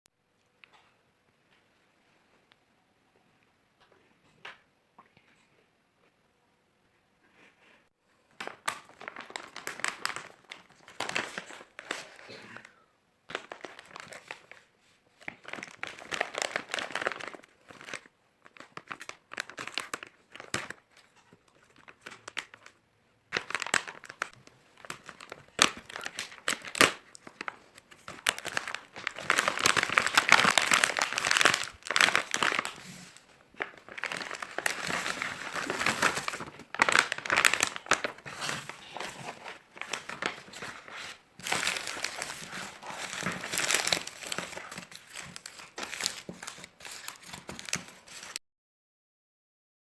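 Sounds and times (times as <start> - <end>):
wrapper crinkling: 8.4 - 12.4, 13.3 - 48.4.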